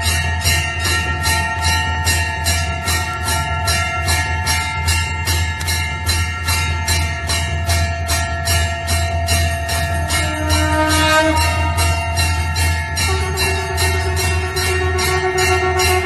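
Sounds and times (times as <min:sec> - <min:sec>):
held ringing tone: 0:00.0 - 0:16.0
temple bells ringing fast: 0:00.0 - 0:16.0.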